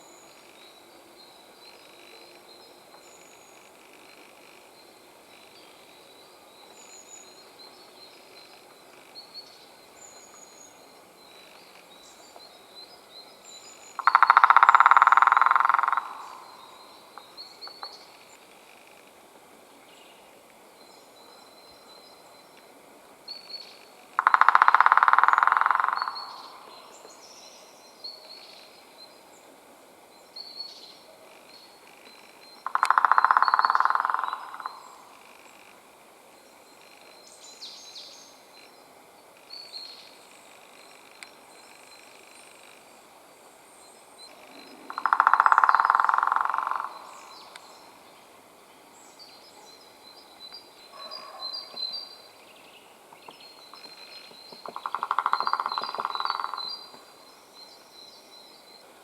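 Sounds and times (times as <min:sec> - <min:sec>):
woodpecker drumming on wood: 0:14.0 - 0:16.5, 0:24.2 - 0:26.6, 0:32.6 - 0:35.7, 0:44.9 - 0:47.3, 0:53.7 - 0:57.1.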